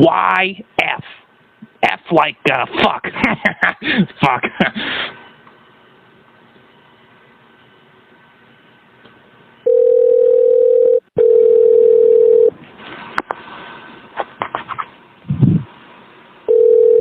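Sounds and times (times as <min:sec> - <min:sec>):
low telephone beep: 0:09.6 - 0:12.5, 0:16.5 - 0:17.0.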